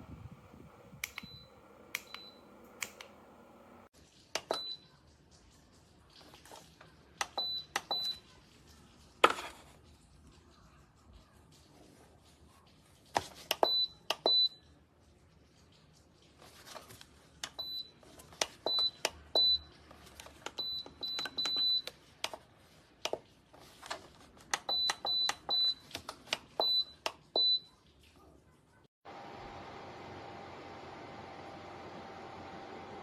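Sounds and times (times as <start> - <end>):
button clicks: 1.0 - 3.2.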